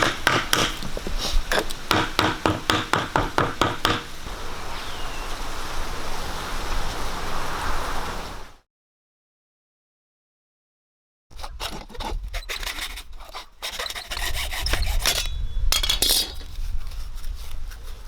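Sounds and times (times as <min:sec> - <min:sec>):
sharp taps and knocks: 0:00.0 - 0:04.2
scraping hiss: 0:00.1 - 0:01.9.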